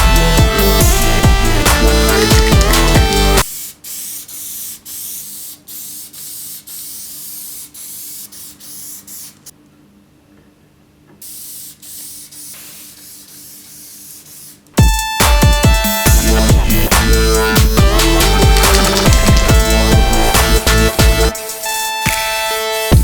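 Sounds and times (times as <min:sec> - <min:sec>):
loud electronic music: 0:00.0 - 0:03.4, 0:14.8 - 0:23.0
short hissing spray bursts: 0:11.2 - 0:14.6.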